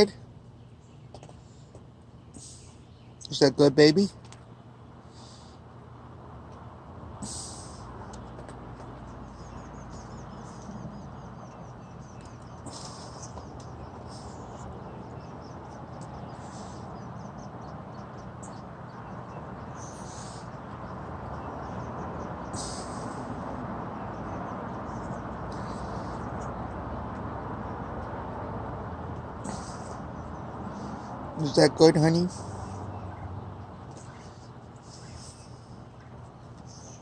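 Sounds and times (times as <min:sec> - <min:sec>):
outdoor background rumble: 0:00.0 - 0:37.0.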